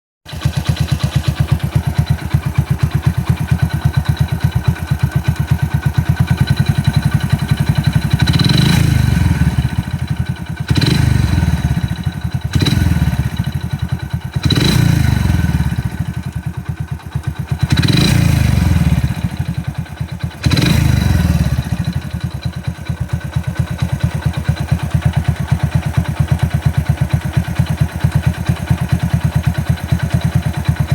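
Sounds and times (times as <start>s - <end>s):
motorcycle engine idling and revving: 0.3s - 30.9s.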